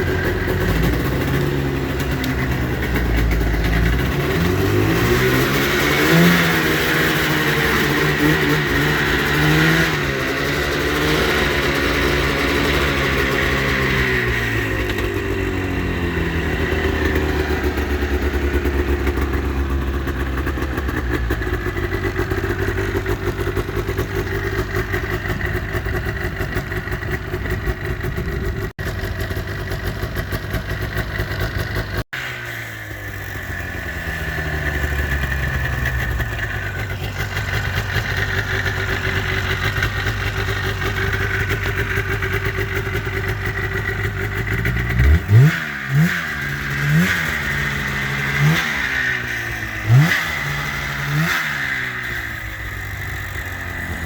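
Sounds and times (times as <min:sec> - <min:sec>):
engine revving: 0:00.0 - 0:54.0
snowmobile engine idling: 0:00.0 - 0:54.0.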